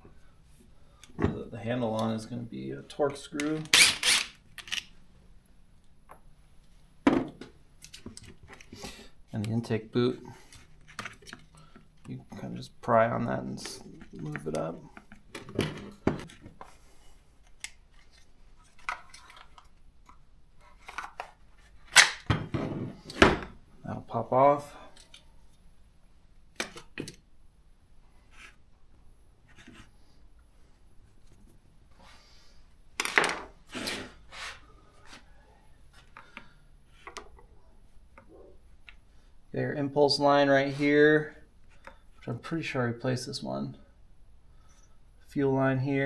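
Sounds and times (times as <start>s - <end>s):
tool clicking and scraping: 3.4s - 4.9s.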